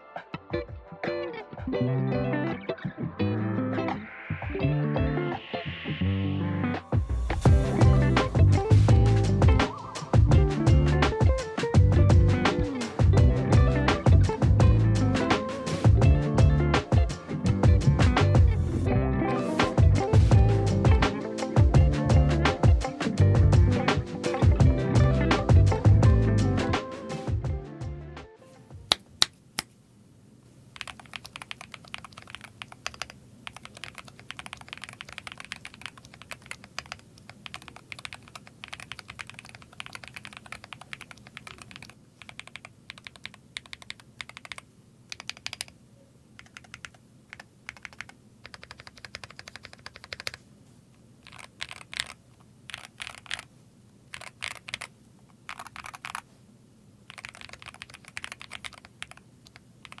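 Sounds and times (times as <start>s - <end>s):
mechanical keyboard typing: 30.8s - 45.7s, 46.4s - 50.4s, 51.2s - 53.5s, 54.1s - 54.9s, 55.5s - 56.2s, 57.1s - 60.0s.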